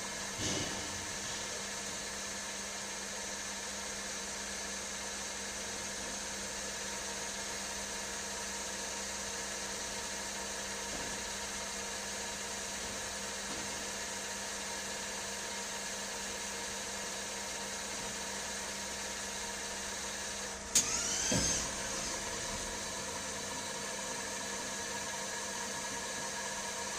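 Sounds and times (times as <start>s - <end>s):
lathe mechanical hum: 10.0s - 26.9s.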